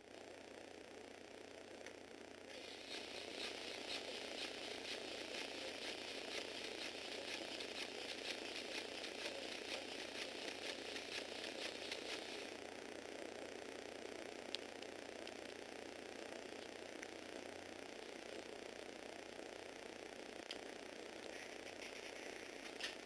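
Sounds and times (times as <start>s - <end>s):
small motor whirring through gears: 2.5s - 12.6s.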